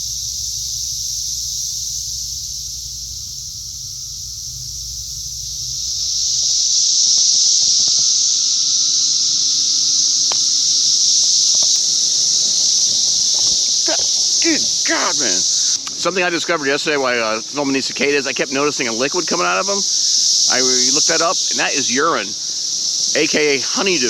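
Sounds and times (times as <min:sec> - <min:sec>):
low rumble: 0:00.0 - 0:06.8
cicadas buzzing: 0:00.0 - 0:24.0.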